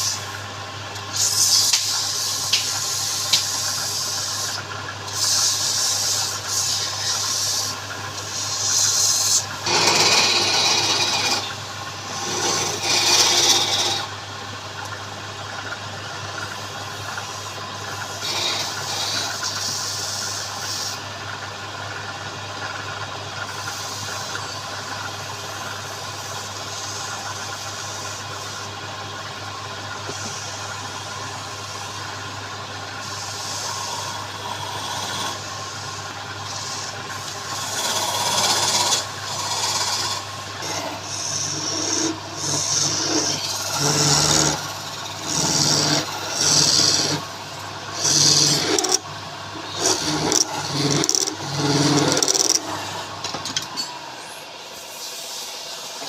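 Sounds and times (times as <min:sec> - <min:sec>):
lathe motor hum: 0:00.0 - 0:56.0
tool scraping spinning wood: 0:00.0 - 0:56.0.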